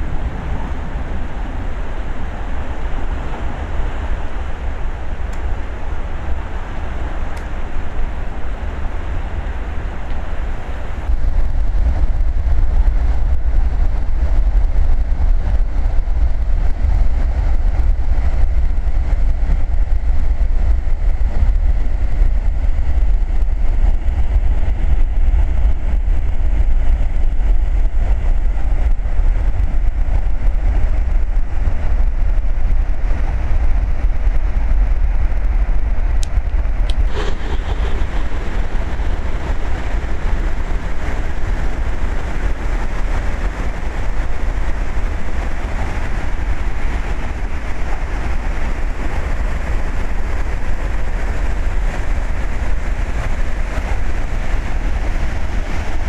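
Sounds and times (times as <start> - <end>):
wind buffeting microphone: 0.0 - 56.0
floodwater rushing: 36.9 - 50.7.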